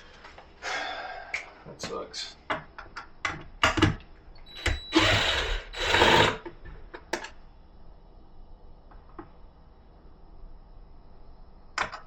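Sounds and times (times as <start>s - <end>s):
cordless drill bursts: 4.5s - 6.4s.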